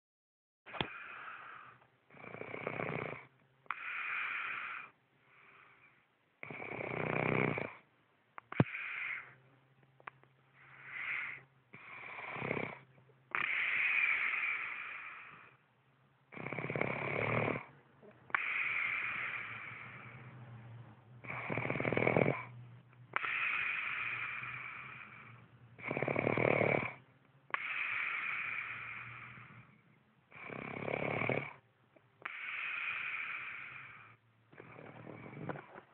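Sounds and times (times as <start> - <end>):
woman snoring: 0.7 - 5.8, 6.4 - 7.8, 10.7 - 15.6, 16.3 - 20.2, 21.2 - 22.5, 23.2 - 29.7, 30.3 - 31.6, 32.2 - 35.7.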